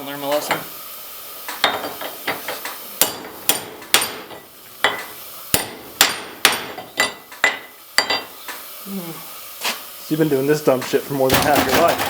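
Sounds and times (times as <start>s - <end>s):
hammer striking metal: 3.0s - 8.2s.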